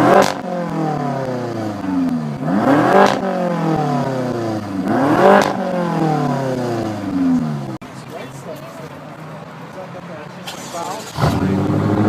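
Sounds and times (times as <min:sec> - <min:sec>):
car engine revving: 0:00.0 - 0:07.8, 0:10.4 - 0:12.0.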